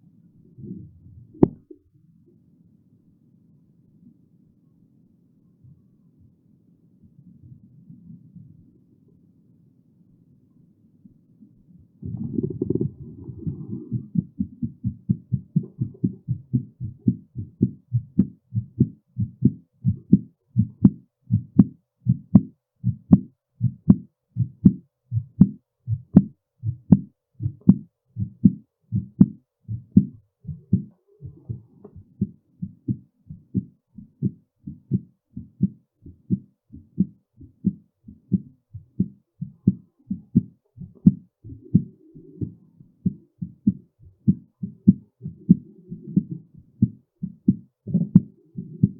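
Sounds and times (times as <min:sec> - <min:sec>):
heartbeat thumps: 0:00.6 - 0:01.7, 0:12.0 - 0:48.9.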